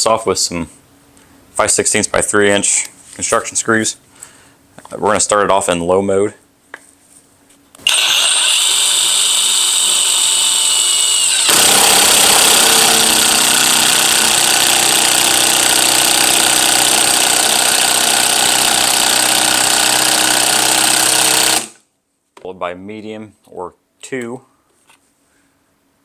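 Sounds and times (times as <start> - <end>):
impact driver driving screw: 7.8 - 21.8.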